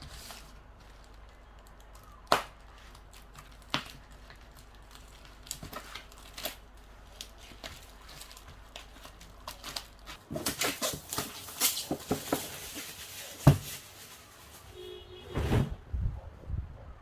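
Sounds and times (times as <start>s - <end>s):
packaging crinkling and rustling: 0.0s - 14.9s.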